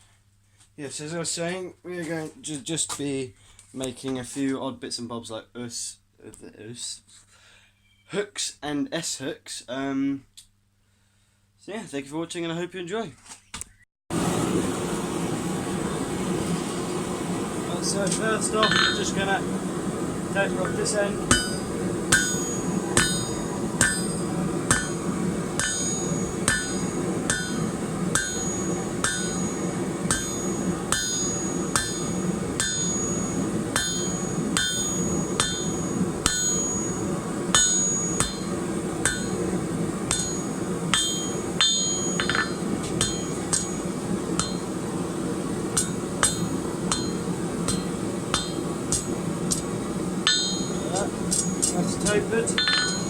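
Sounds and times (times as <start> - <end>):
hammer striking metal on anvil: 18.6 - 19.3, 20.6 - 44.8, 45.8 - 53.0.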